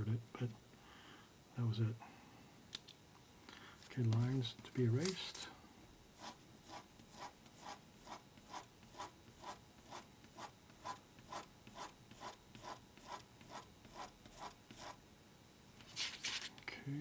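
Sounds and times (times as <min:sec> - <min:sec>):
pencil scratching on paper: 0:06.2 - 0:15.0.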